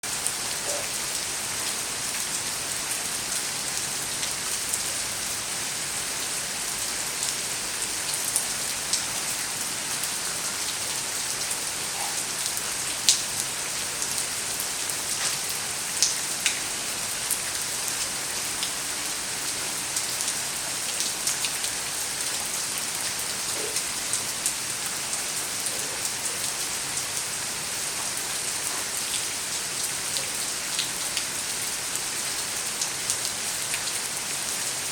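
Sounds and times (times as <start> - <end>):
steady rain falling: 0.0 - 34.9
raindrops ticking close by: 7.2 - 18.9, 19.5 - 31.3.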